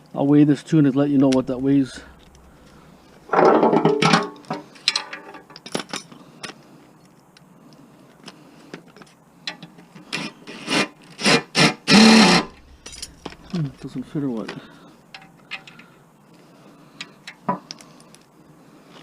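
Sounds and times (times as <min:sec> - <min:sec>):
metal parts clicking and knocking: 0:03.3 - 0:06.1, 0:12.3 - 0:13.9.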